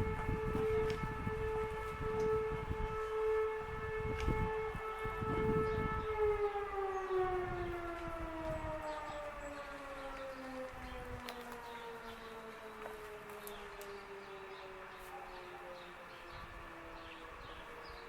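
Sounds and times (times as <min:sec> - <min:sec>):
siren winding down: 0:00.0 - 0:18.0.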